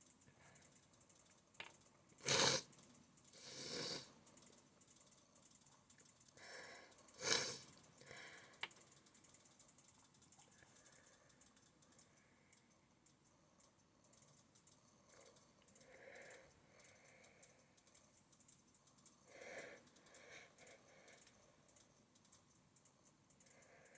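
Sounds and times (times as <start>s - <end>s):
person sneezing: 2.2s - 2.6s
person sniffing and breathing: 2.2s - 2.7s, 3.4s - 4.2s, 6.4s - 8.6s, 19.3s - 21.4s.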